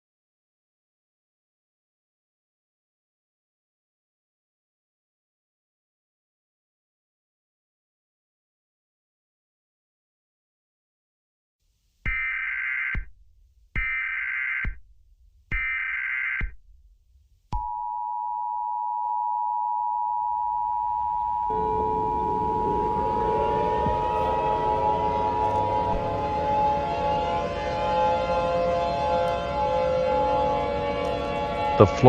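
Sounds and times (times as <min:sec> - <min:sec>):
wailing siren: 0:12.1 - 0:13.1, 0:13.8 - 0:14.8, 0:15.6 - 0:16.5, 0:20.0 - 0:32.0
two-tone attention signal: 0:17.6 - 0:27.2.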